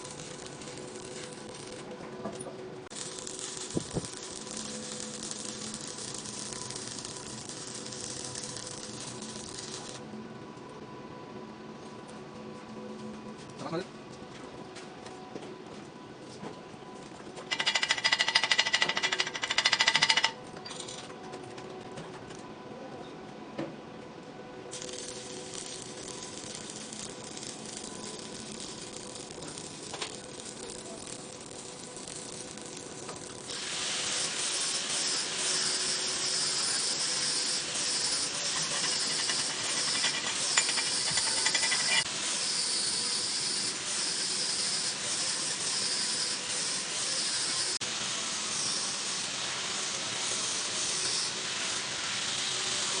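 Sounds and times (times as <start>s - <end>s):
welding arc hissing and crackling: 0.0s - 1.9s, 2.9s - 10.0s, 24.7s - 53.0s.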